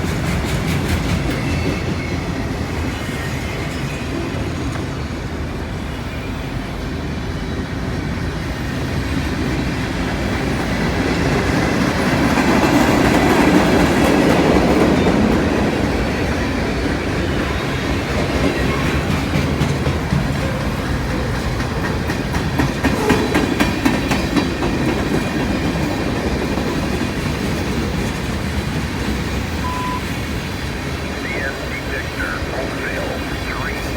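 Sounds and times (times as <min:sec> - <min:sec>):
freight train wheels clacking: 0:00.0 - 0:03.9, 0:08.6 - 0:31.1.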